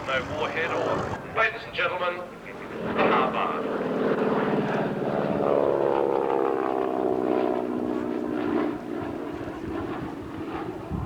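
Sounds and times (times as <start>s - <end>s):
propeller plane flying by: 0.0s - 11.0s.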